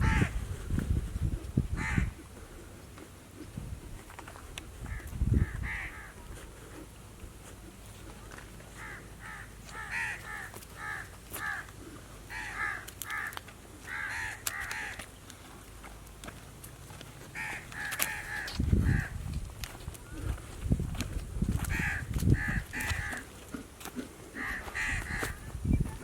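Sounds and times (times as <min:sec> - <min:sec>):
crows cawing: 0:00.0 - 0:00.4, 0:01.7 - 0:02.2, 0:04.8 - 0:06.4, 0:08.8 - 0:15.1, 0:17.3 - 0:19.2, 0:21.6 - 0:23.3, 0:24.3 - 0:25.5.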